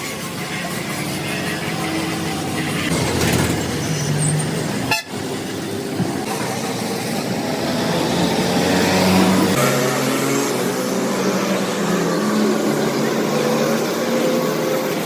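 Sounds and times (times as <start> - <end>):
street traffic: 0.0 - 15.0
vehicle horns sounding: 4.8 - 5.4.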